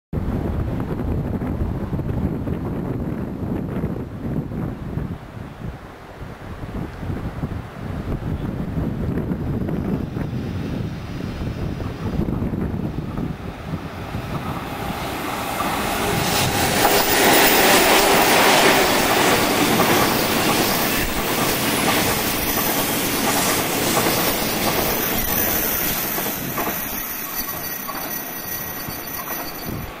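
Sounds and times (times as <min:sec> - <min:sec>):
train wheels clattering over rail joints: 0:14.3 - 0:29.8
wheel squeal: 0:24.1 - 0:30.0.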